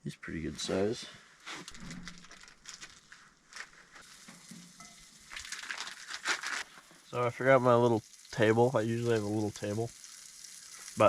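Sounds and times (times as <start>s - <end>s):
food sizzling in a frying pan: 4.0s - 11.0s.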